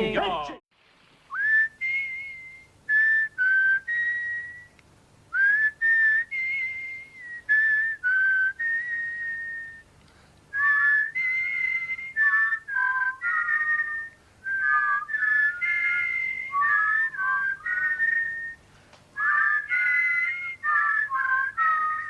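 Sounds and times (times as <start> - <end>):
person whistling a tune: 1.3 - 4.8, 5.4 - 9.8, 10.6 - 18.6, 19.2 - 22.0.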